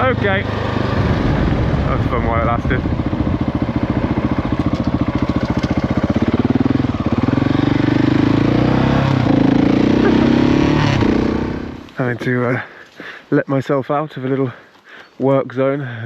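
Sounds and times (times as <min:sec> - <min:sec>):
motorcycle engine running: 0:00.0 - 0:11.9.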